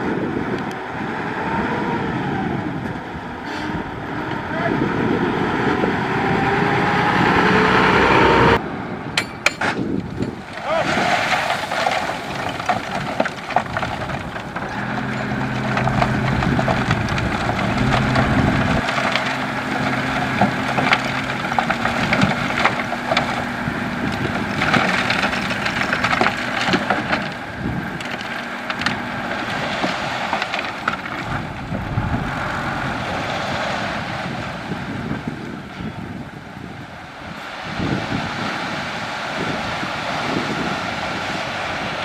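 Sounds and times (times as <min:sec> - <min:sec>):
heavy engine low hum: 0:00.0 - 0:42.0
gravel crunching under machinery: 0:09.2 - 0:42.0.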